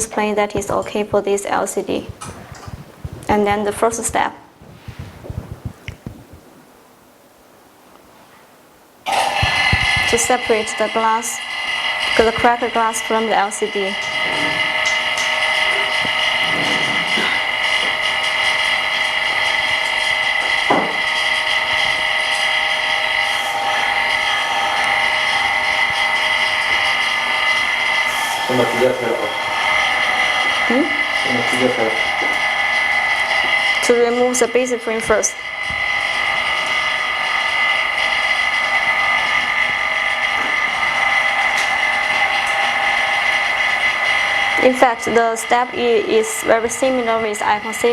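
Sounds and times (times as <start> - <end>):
small motor whining: 9.1 - 47.9.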